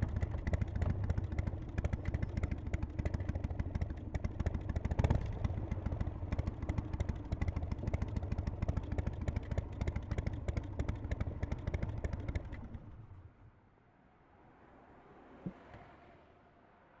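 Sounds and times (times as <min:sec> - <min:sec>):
motorcycle engine ticking clatter: 0:00.0 - 0:12.9.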